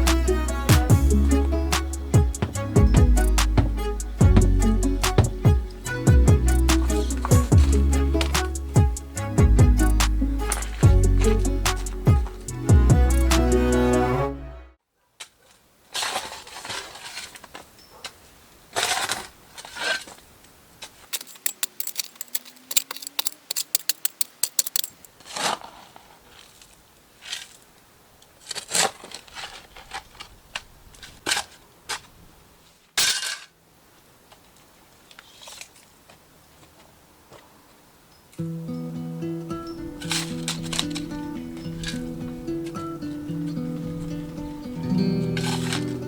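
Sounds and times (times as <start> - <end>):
small objects clicking and knocking: 20.8 - 25.2.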